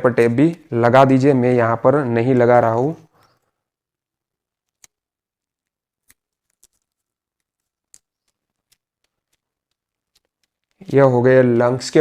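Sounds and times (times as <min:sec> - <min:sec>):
faint paper tape clicks: 0:04.6 - 0:11.8.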